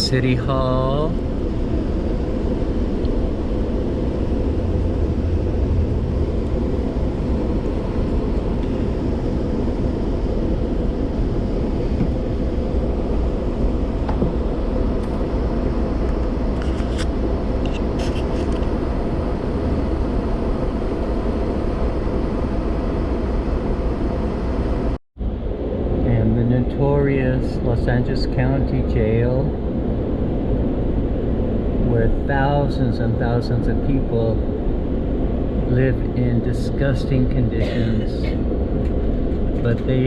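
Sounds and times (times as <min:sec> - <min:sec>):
train rumbling at speed: 0:00.0 - 0:40.0.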